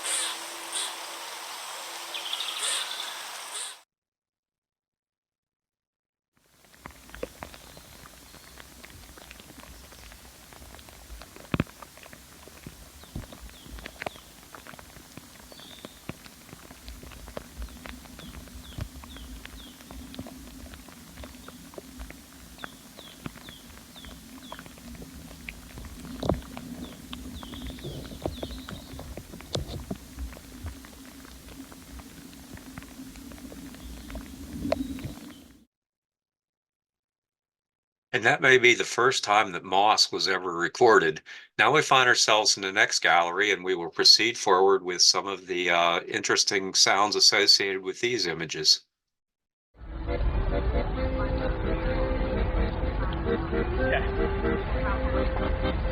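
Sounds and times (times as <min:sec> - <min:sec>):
faint squeaky chirps: 0:00.0 - 0:03.8, 0:07.0 - 0:35.6
sharp clicks and crackles: 0:06.6 - 0:35.6
low rumble: 0:08.4 - 0:35.6.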